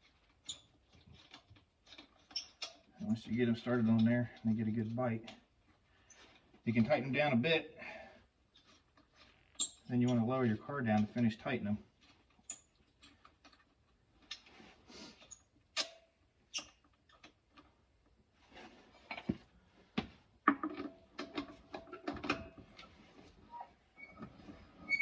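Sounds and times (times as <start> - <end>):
metallic clicks of tire tools: 15.2 - 17.7.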